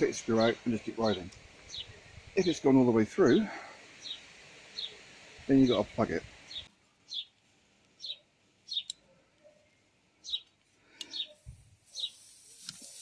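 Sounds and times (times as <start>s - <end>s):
small bird chirping: 0.4s - 2.5s, 6.5s - 7.4s, 8.0s - 12.3s
faint clicks: 10.4s - 11.2s.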